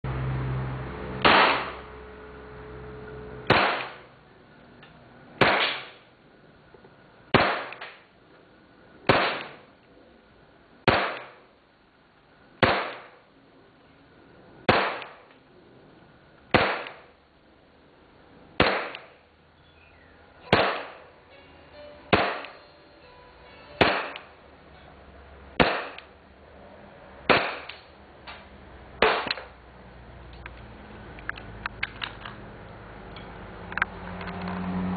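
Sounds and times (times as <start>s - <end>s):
airsoft pistol shots: 1.2s - 1.8s, 3.5s - 4.1s, 5.4s - 6.0s, 7.3s - 8.0s, 9.1s - 9.7s, 10.9s - 11.4s, 12.6s - 13.2s, 14.7s - 15.2s, 16.5s - 17.1s, 18.6s - 19.2s, 20.5s - 21.0s, 22.1s - 22.6s, 23.8s - 24.3s, 25.6s - 26.1s, 27.3s - 27.8s, 29.0s - 29.5s.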